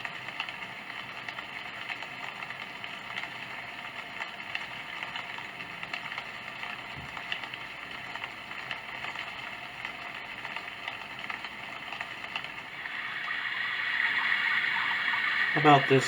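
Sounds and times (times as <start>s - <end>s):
steady hiss of rain: 0.0s - 16.0s
water drips ticking: 7.1s - 16.0s.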